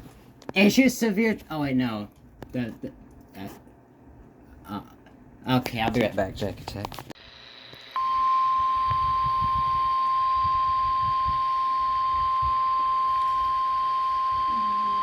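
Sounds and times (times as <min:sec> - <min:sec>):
steady high warning beep: 0:08.0 - 0:15.0.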